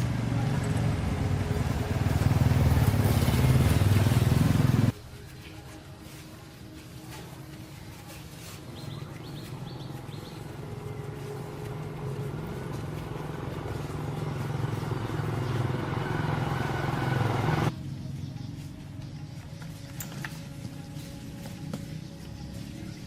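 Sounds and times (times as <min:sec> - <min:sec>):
bird chirps: 0:08.7 - 0:11.1
low engine drone: 0:10.6 - 0:17.7.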